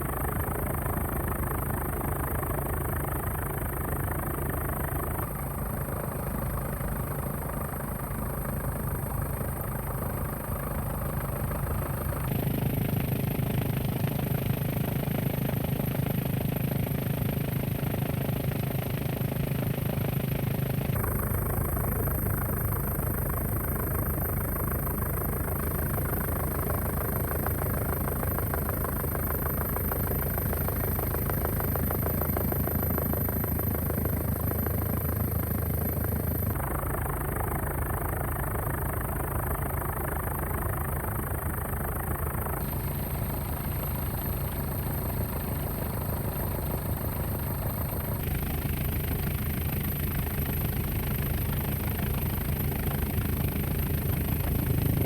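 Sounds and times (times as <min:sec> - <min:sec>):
helicopter rotor and engine drone: 0:00.0 - 0:55.0.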